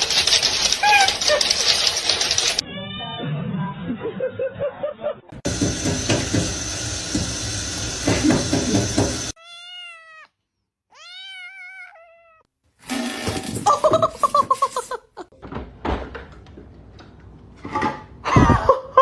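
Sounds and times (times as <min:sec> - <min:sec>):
cat meowing: 0:09.4 - 0:12.5.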